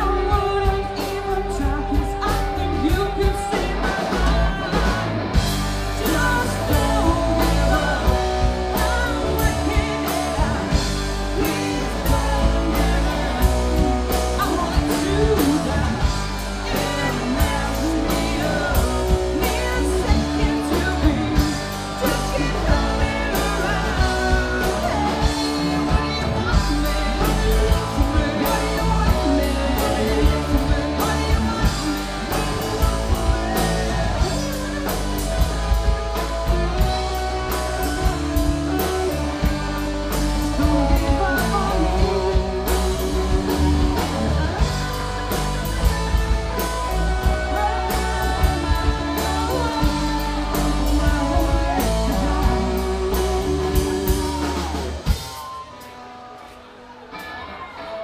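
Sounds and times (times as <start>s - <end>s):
drum kit beat: 0.0s - 55.9s
person singing: 0.0s - 56.6s
electric guitar: 0.0s - 58.0s.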